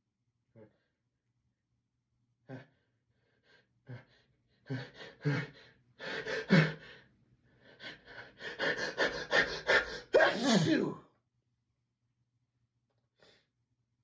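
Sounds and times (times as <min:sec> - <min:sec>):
person gasping before sneeze: 0:09.8 - 0:11.0.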